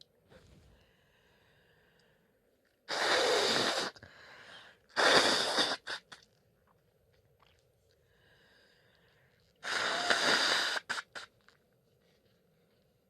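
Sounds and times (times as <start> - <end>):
person blowing nose: 2.9 - 4.0, 5.0 - 6.2, 9.6 - 11.4
nasal breathing: 8.0 - 11.1.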